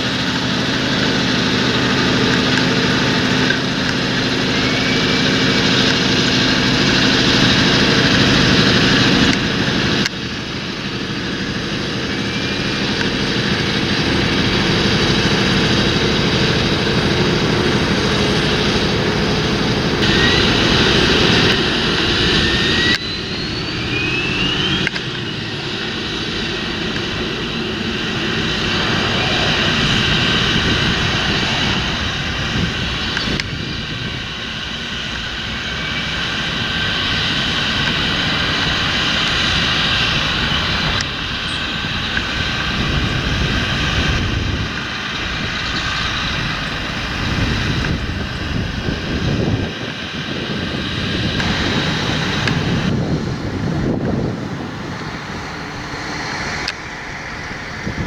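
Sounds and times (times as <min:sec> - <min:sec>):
tractor diesel engine droning: 0:00.0 - 0:58.0
short rising whistles: 0:01.2 - 0:33.5.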